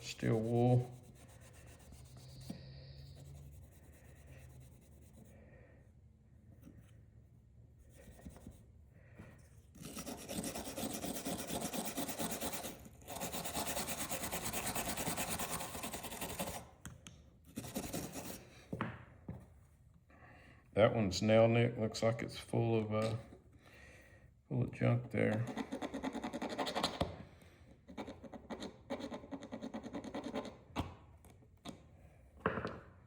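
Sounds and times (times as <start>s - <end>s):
steel wool rubbing on metal: 0.0s - 5.2s.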